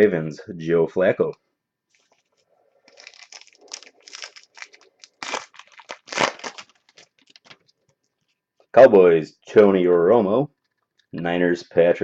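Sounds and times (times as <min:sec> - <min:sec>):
plastic wrapper crinkling and tearing: 0:01.9 - 0:08.4.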